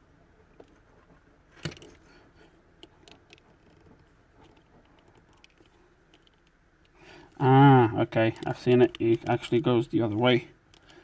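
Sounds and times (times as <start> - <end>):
plastic parts clicking and tapping: 2.8 - 7.0, 8.1 - 11.0.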